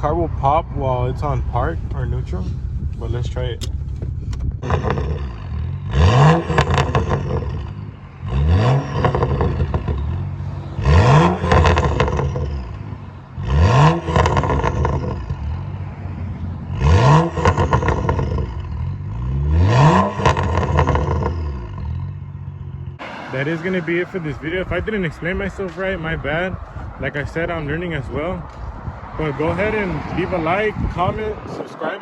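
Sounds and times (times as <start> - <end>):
car engine revving: 0.0 - 32.0
crackling exhaust pops: 1.2 - 10.4, 11.0 - 13.1, 13.7 - 15.6, 16.9 - 23.0.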